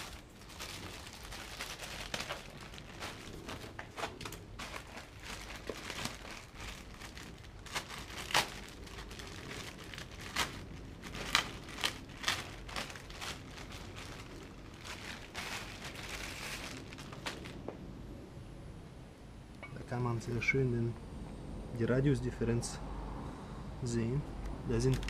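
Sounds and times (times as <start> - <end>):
objects and packaging handled: 0.0 - 17.7, 24.7 - 25.0.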